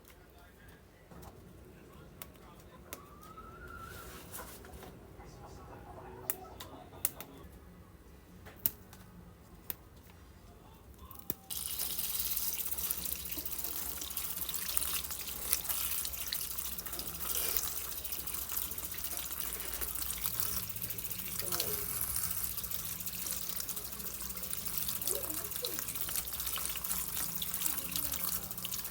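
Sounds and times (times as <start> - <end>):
water running from a tap: 11.5 - 28.9.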